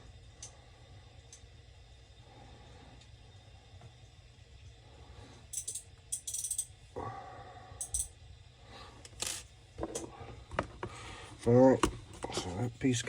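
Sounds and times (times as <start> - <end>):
small parts clinking and rattling: 5.5 - 6.7, 7.8 - 8.1, 9.1 - 10.0.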